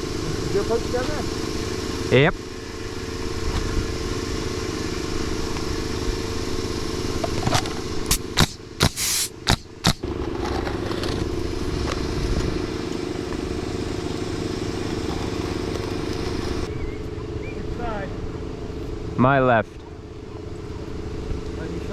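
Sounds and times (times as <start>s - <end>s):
air hiss: 8.1s - 10.0s
nail gun shots: 8.1s - 10.0s.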